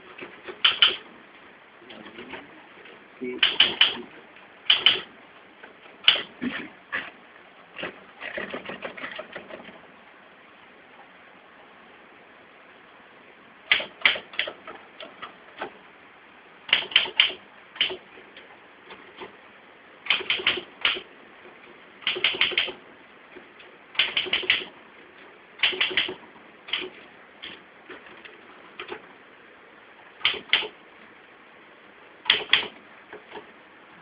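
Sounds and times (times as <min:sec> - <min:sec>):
typewriter keys striking: 0:00.5 - 0:01.0, 0:03.4 - 0:04.0, 0:04.7 - 0:05.1, 0:16.7 - 0:18.0, 0:20.1 - 0:21.0, 0:22.0 - 0:22.8, 0:24.0 - 0:24.7, 0:25.6 - 0:27.6, 0:30.2 - 0:30.7, 0:32.3 - 0:32.7.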